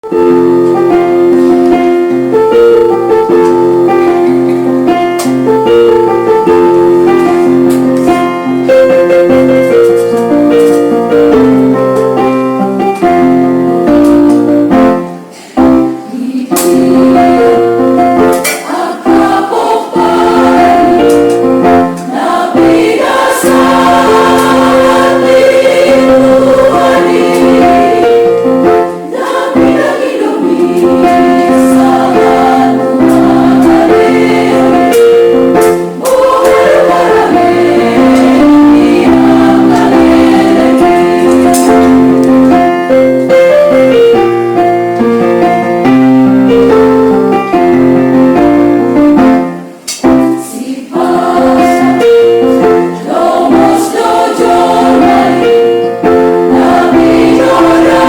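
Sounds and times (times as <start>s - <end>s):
electronic keyboard chords: 0.0s - 58.0s
women's choir singing a hymn: 0.4s - 3.0s, 15.4s - 43.1s, 50.2s - 58.0s.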